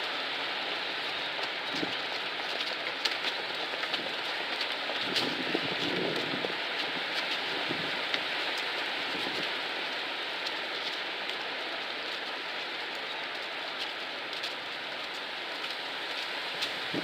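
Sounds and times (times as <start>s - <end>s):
dry leaves rustling in wind: 0.0s - 17.0s.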